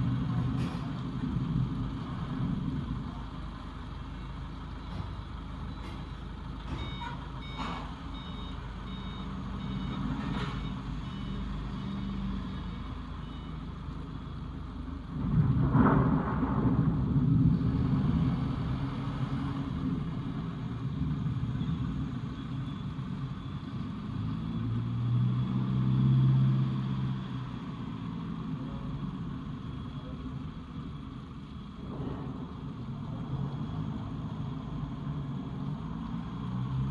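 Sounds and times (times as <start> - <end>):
reversing beeper beeps: 4.8 - 13.7
loud low rumble: 15.1 - 22.1.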